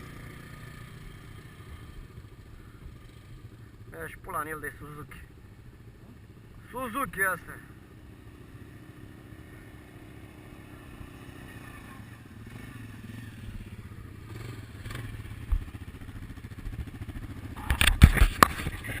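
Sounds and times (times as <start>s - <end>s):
atv engine running: 0.0s - 19.0s.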